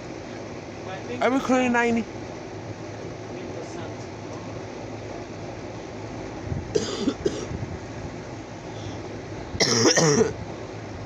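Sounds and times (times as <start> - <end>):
person coughing: 6.8 - 7.5, 9.6 - 10.3.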